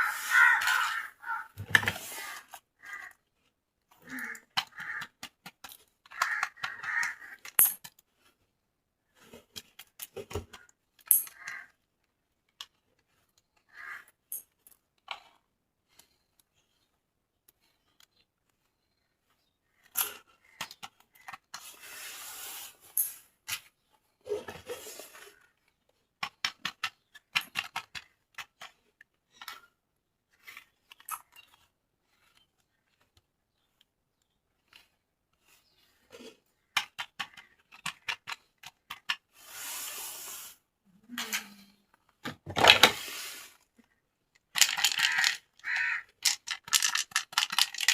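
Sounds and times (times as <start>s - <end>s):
plastic parts clicking and tapping: 3.8s - 8.3s, 14.3s - 16.5s, 19.8s - 21.7s, 25.6s - 29.7s, 36.1s - 39.3s, 41.2s - 43.0s, 43.8s - 47.9s.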